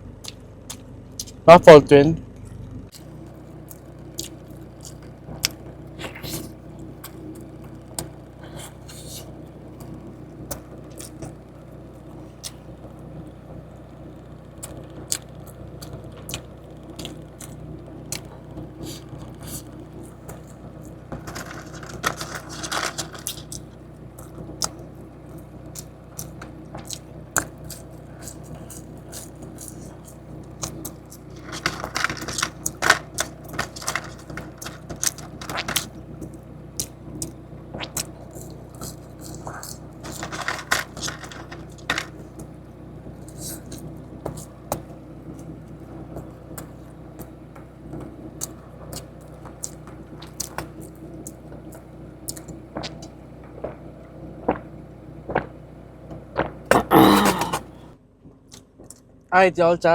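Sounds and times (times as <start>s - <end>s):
steady low hum: 0.0s - 59.9s
person eating: 3.7s - 9.4s, 25.4s - 42.3s, 56.7s - 58.0s.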